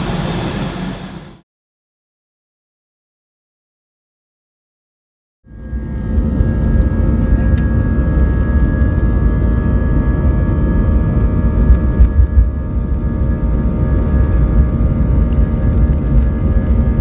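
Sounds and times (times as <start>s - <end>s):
jet engine rumble in cabin: 0.0s - 1.4s, 5.6s - 17.0s
jet engine whine: 0.0s - 1.4s, 5.5s - 17.0s.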